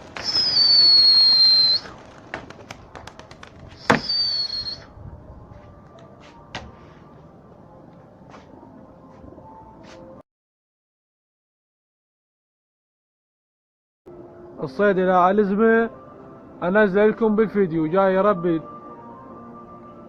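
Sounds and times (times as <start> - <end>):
sharp high whistle: 0.2 - 1.9, 3.8 - 5.0.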